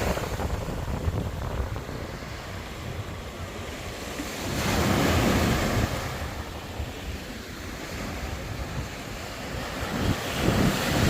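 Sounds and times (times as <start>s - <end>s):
surf washing onto shore: 0.0s - 11.0s
wind buffeting microphone: 0.0s - 11.0s.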